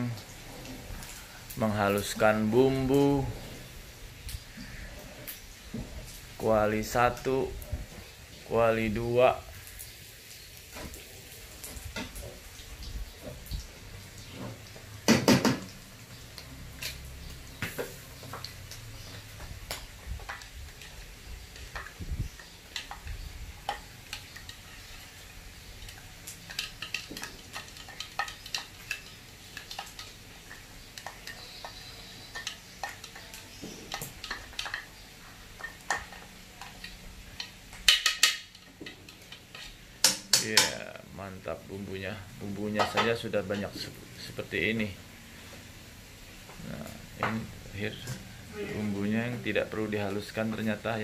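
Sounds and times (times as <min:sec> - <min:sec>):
utensils clinking against pots: 0:17.8 - 0:41.0, 0:42.6 - 0:44.4.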